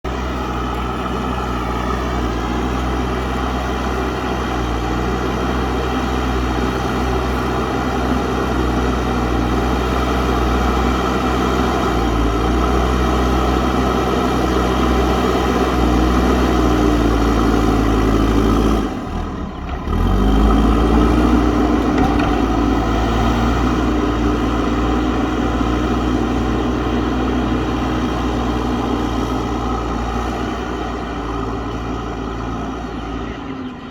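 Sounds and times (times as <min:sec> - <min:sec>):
diesel engine under load: 0:00.0 - 0:33.9.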